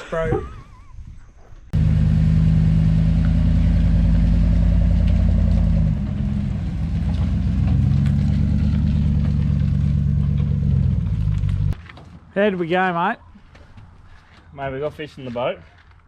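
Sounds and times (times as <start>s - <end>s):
motor engine running: 1.8s - 11.8s.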